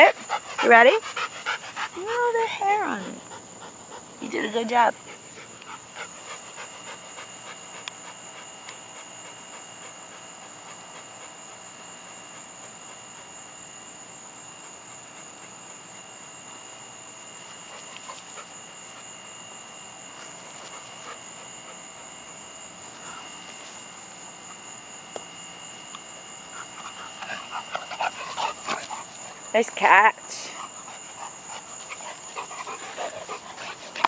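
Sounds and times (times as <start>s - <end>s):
dog panting: 0.0s - 11.4s, 20.3s - 22.2s, 26.4s - 29.8s, 30.4s - 34.0s.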